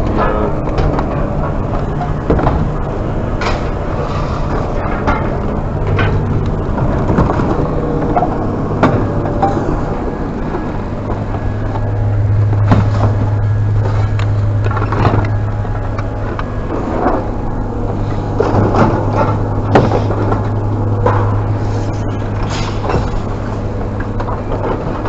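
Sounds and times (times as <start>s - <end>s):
vehicle engine humming: 0.0s - 25.0s
sharp clanks and knocks: 4.4s - 17.3s, 18.1s - 25.0s.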